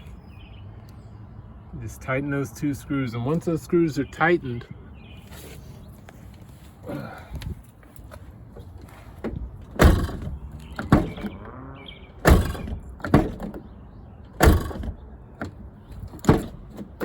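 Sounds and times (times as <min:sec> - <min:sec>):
car door handle clunking: 0:09.2 - 0:11.4, 0:12.2 - 0:13.7, 0:14.3 - 0:17.0.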